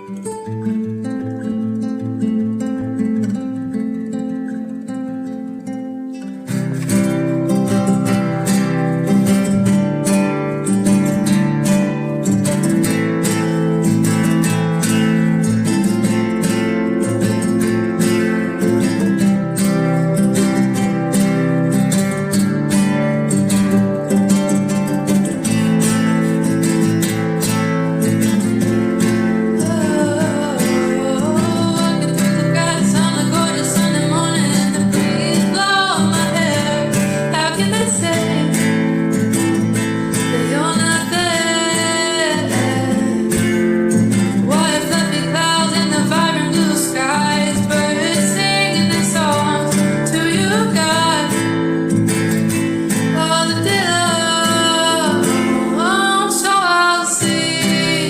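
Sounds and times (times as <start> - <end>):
acoustic guitar strumming: 0.0 - 58.0
woman singing: 6.6 - 58.0.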